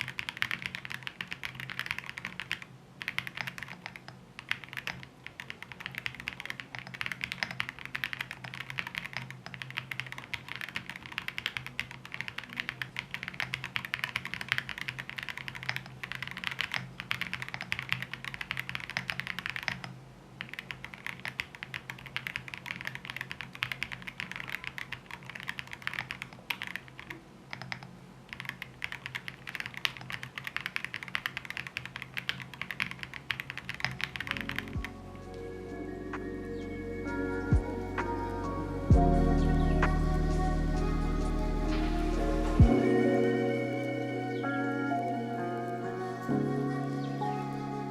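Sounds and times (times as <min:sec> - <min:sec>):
fast typing on mechanical keyboard: 0:00.0 - 0:35.0.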